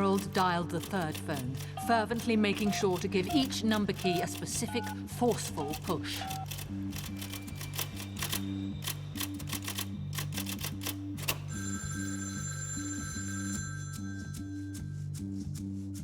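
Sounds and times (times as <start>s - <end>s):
telephone ringing: 0.0s - 9.4s, 11.0s - 14.6s
rapid clicking: 0.0s - 11.5s.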